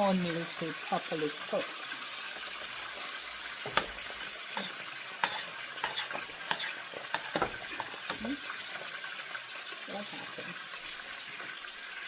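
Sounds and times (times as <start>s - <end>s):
frying sizzle: 0.0s - 12.0s
spoon stirring in a pot: 2.5s - 9.0s
spoon knocking pot: 3.6s - 8.4s.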